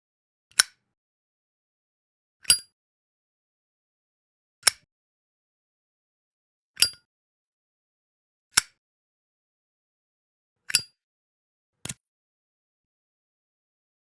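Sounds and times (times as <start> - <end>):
lighter lid metallic clicks: 0.5 - 0.8, 6.8 - 7.0.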